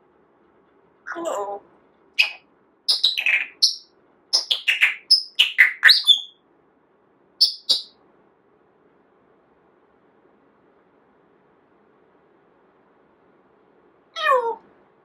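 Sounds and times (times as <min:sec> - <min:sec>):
parrot chirping and whistling: 0:02.2 - 0:06.4, 0:07.4 - 0:07.9.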